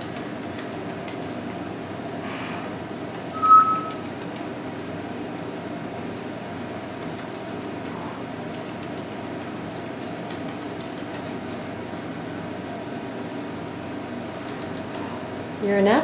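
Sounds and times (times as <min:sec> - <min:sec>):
electric fan humming: 0:00.0 - 0:16.0.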